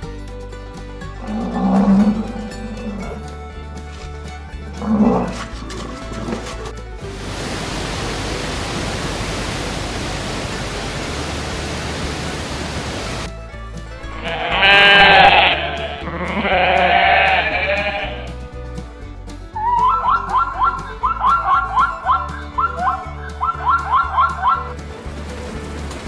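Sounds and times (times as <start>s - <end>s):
steady hiss: 7.2s - 13.3s
wavering animal calls: 14.0s - 18.6s, 19.6s - 24.8s.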